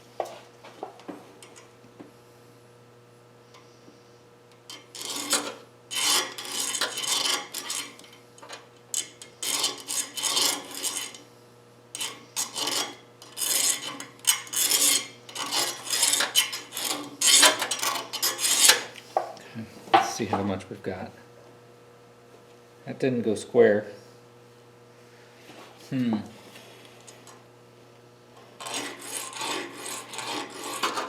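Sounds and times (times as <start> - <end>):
metal file rasping: 5.0 - 8.1, 9.0 - 11.2, 12.0 - 19.0, 28.6 - 31.0.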